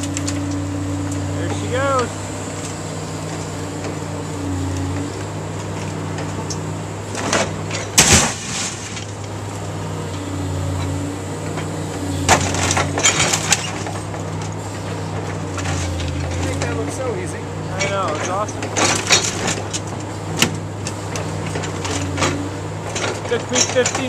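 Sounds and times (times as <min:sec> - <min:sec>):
crane engine running: 0:00.0 - 0:24.0
metal crunching: 0:04.7 - 0:09.8, 0:10.7 - 0:24.0
glass breaking: 0:07.7 - 0:09.2.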